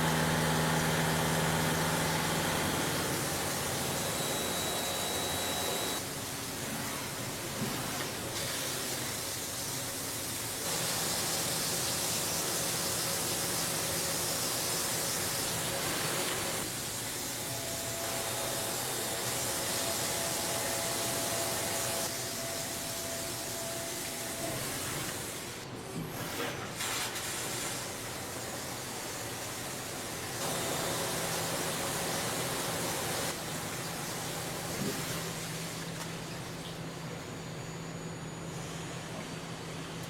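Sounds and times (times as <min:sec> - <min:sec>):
machine running: 0:00.0 - 0:06.0, 0:30.4 - 0:33.4.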